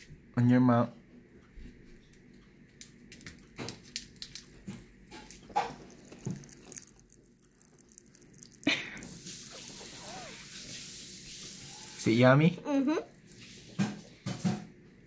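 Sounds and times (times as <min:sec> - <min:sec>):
popping candy crackling: 0:02.8 - 0:12.1.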